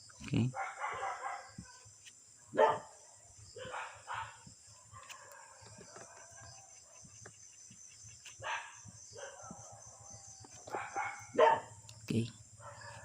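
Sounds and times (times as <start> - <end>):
dog barking: 0.5 - 1.9, 2.5 - 3.0, 3.6 - 7.1, 8.4 - 11.8, 12.6 - 13.0.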